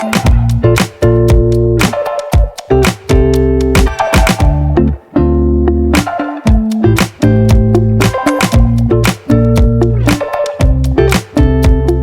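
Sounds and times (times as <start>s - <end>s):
funky groove music: 0.0s - 12.0s.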